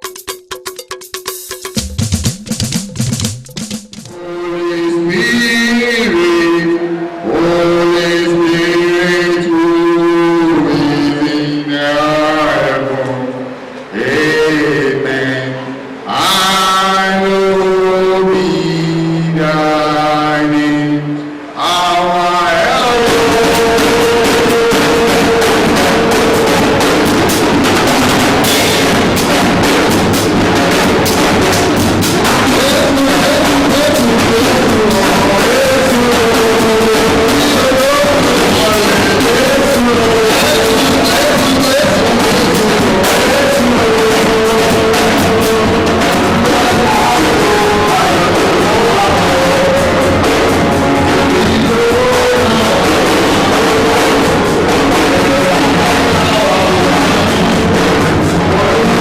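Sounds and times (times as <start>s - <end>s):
drum kit steady beat: 0.0s - 4.3s, 22.8s - 59.0s.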